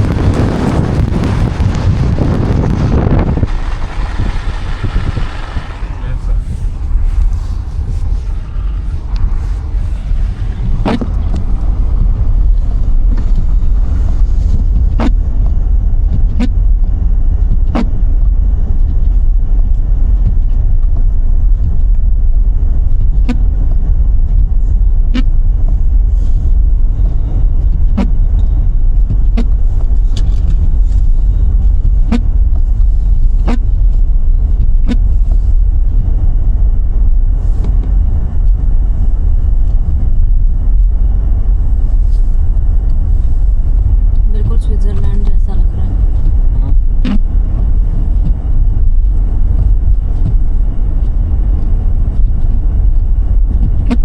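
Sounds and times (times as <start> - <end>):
engine and tyre rumble: 0.0 - 54.0.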